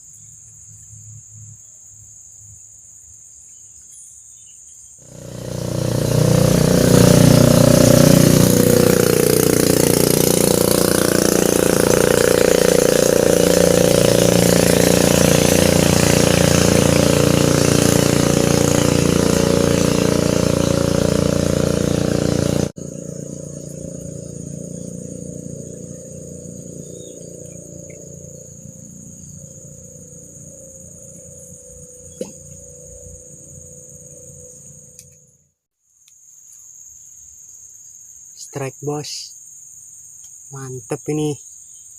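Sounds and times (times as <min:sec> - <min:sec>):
high-pitched insect drone: 0:03.9 - 0:35.4
small engine running: 0:05.0 - 0:35.5.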